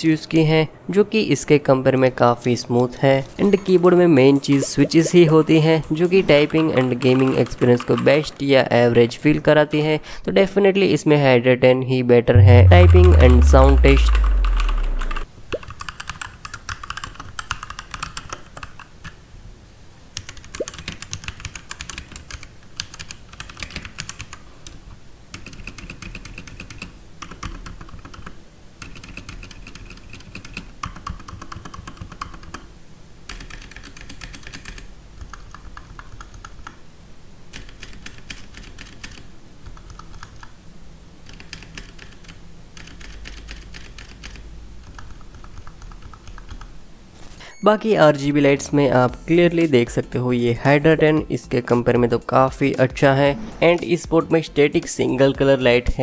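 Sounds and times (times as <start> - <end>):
mechanical keyboard typing: 4.5 - 8.4, 14.2 - 18.8, 20.2 - 24.4, 25.4 - 32.6, 33.3 - 36.8, 37.5 - 40.5, 41.2 - 46.7.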